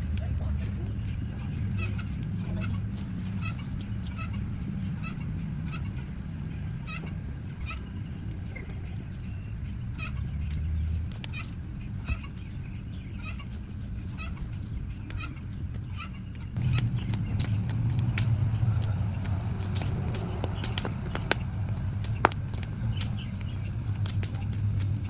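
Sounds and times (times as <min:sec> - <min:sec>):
bird chirping: 0:00.0 - 0:25.0
steady low rumble: 0:00.0 - 0:25.0.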